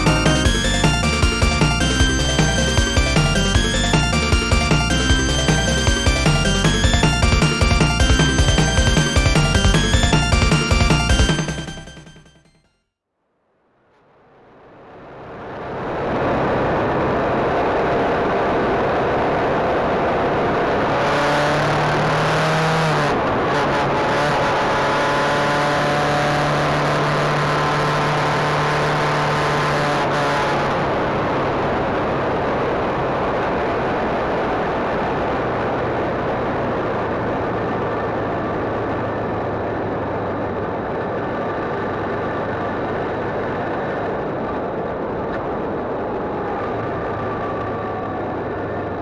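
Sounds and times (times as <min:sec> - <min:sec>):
motorcycle engine running: 0:00.0 - 0:12.1
road noise: 0:00.0 - 0:12.2, 0:14.7 - 0:49.0.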